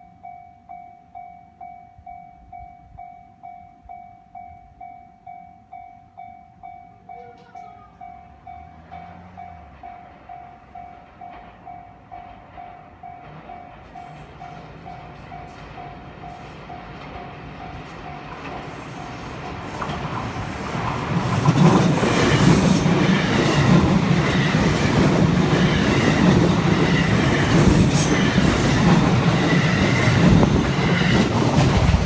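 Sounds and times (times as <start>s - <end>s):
electric train approaching: 6.2s - 32.0s
level crossing bell ringing: 6.8s - 9.6s.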